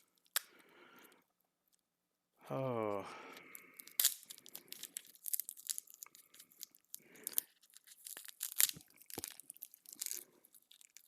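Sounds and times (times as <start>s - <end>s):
packaging crinkling and rustling: 3.4s - 11.0s
sharp packaging snaps: 3.4s - 11.0s.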